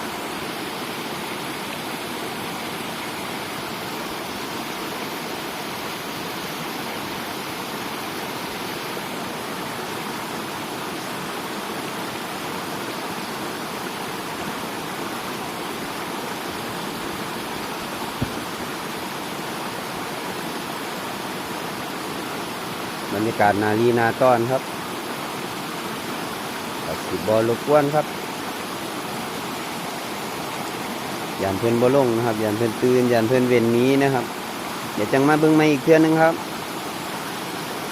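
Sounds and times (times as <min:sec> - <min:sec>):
water rushing: 0:00.0 - 0:37.9
short knock: 0:18.2 - 0:18.5.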